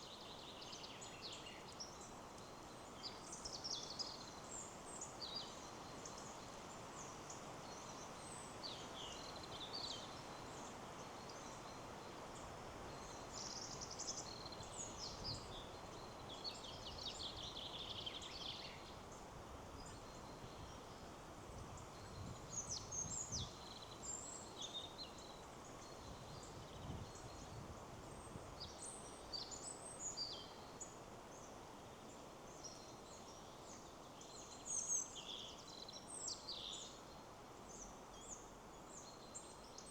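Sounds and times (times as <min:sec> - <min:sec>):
wind in trees: 0:00.0 - 0:39.9.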